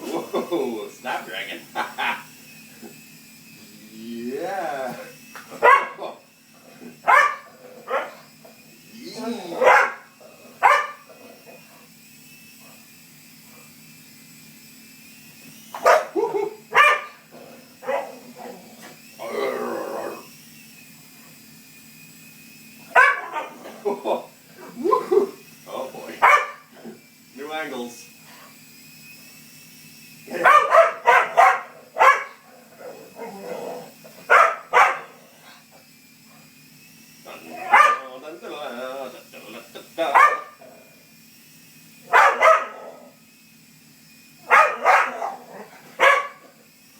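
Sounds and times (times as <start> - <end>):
toy helicopter rotor hum: 0.0 - 46.9
small dog barking: 5.5 - 6.1, 7.0 - 8.2, 9.5 - 11.1, 15.8 - 17.2, 17.8 - 18.2, 22.9 - 23.6, 26.2 - 26.7, 30.3 - 32.4, 34.2 - 35.2, 37.5 - 38.1, 40.1 - 40.6, 42.1 - 43.0, 44.4 - 46.5.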